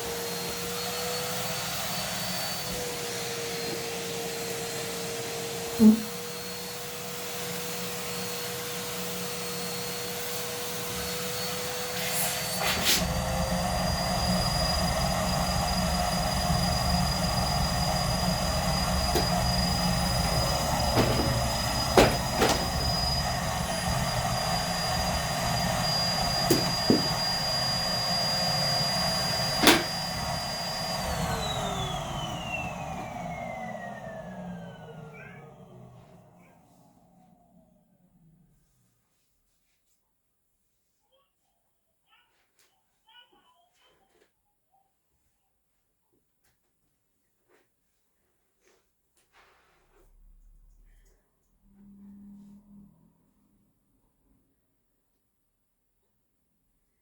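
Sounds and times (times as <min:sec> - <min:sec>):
vacuum cleaner motor whine: 0:00.0 - 0:38.6
knocks against vacuum nozzle: 0:19.2 - 0:19.4, 0:20.9 - 0:22.8, 0:26.5 - 0:27.2, 0:29.6 - 0:30.0.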